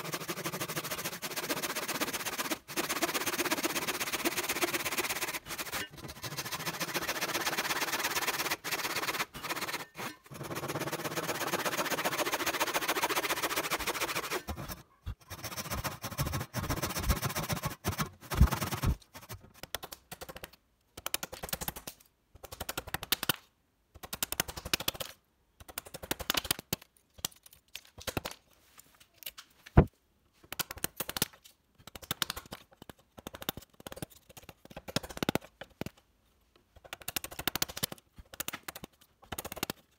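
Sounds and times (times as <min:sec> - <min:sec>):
wood scraping: 0:00.1 - 0:19.5.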